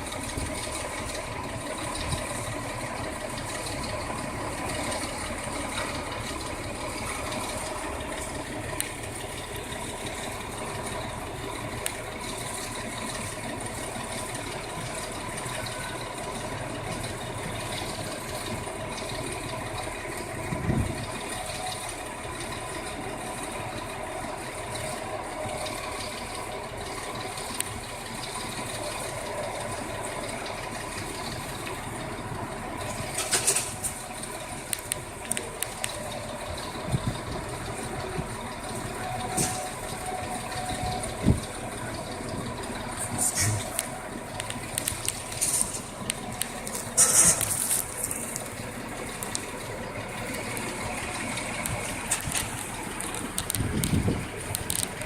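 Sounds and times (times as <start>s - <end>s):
engine idling: 0.0s - 55.0s
sharp clicks and knocks: 32.8s - 55.0s.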